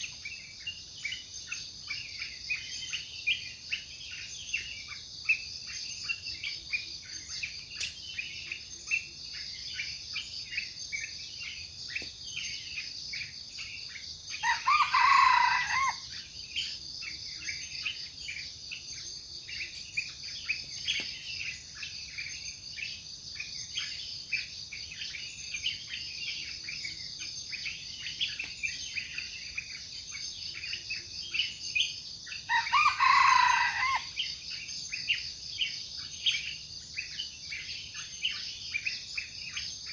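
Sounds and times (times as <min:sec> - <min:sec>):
bird chirps: 0:00.0 - 0:39.9
junglefowl crowing: 0:14.4 - 0:16.1, 0:32.5 - 0:34.2.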